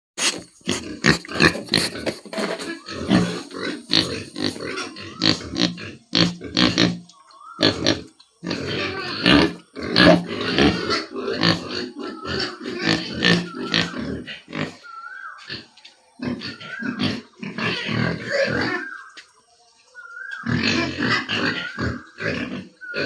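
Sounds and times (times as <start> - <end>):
pigs calling: 0.2 - 23.0.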